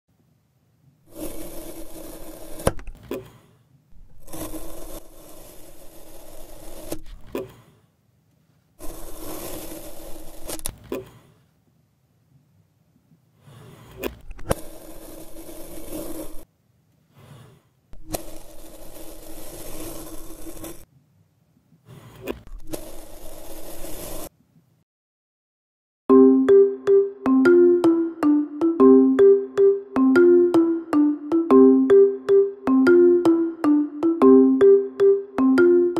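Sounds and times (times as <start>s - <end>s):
gritty sand scraping: 18.1s - 20.8s.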